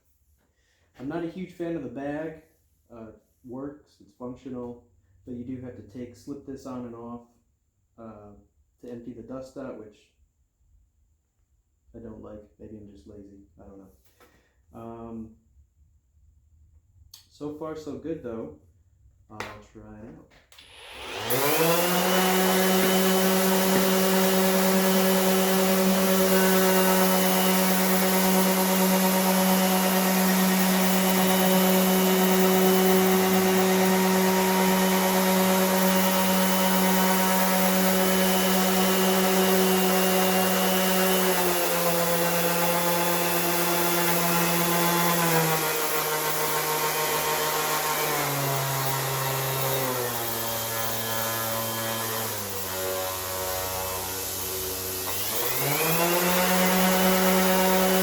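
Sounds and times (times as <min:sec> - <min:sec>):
orbital sander running: 0:20.6 - 0:58.0.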